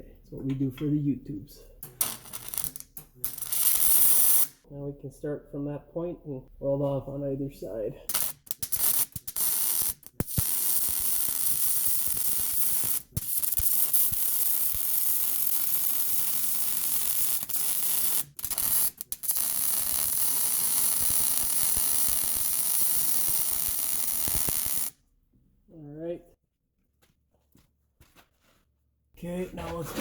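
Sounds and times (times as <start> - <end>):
arc welder crackling sizzle: 1.8 - 4.6, 8.1 - 25.0.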